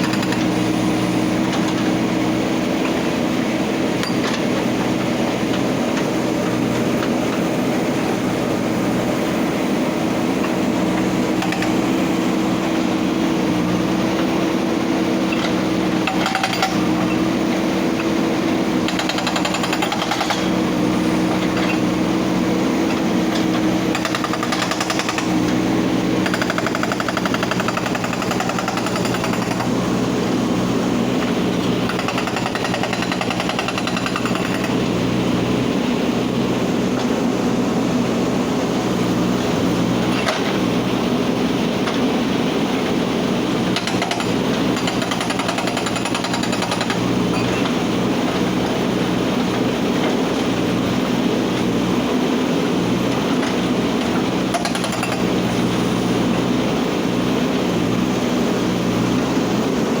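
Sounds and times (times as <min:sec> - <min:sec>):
hydraulic breaker hammering rock: 0:00.0 - 0:08.6, 0:10.2 - 0:35.2, 0:42.8 - 0:50.7, 0:51.3 - 0:56.2
diesel engine running: 0:00.0 - 1:00.0.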